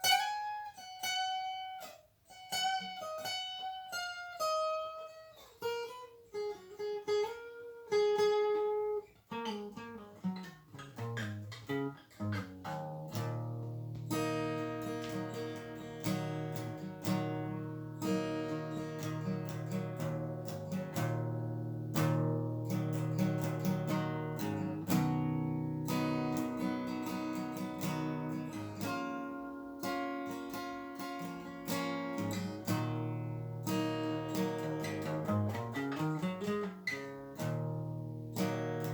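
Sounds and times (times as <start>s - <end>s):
guitar picked notes: 0.0s - 38.9s
guitar strummed chords: 0.0s - 38.9s.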